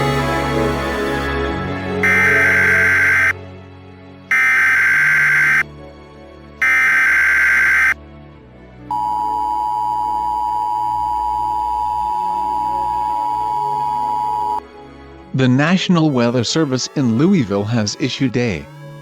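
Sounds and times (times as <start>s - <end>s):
low ambient music: 0.0s - 19.0s
buzzing digital data bursts: 2.0s - 3.3s, 4.3s - 5.6s, 6.6s - 8.0s
two-tone attention signal: 2.0s - 3.4s, 4.3s - 5.6s, 6.6s - 8.0s, 8.9s - 14.6s.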